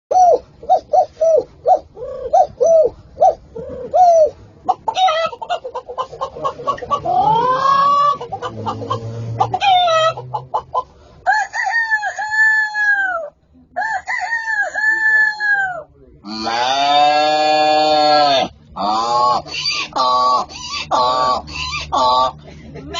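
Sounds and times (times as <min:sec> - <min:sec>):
chickens clucking: 0:00.1 - 0:17.0, 0:17.8 - 0:22.9
rooster crowing: 0:11.2 - 0:15.8.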